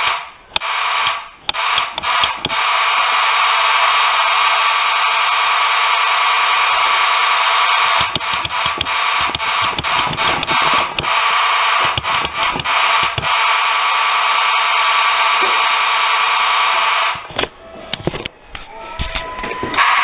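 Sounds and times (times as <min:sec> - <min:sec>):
sharp clicks: 0:00.0 - 0:02.6, 0:07.8 - 0:13.5
fire alarm horn buzzing: 0:00.0 - 0:17.9, 0:19.4 - 0:20.0.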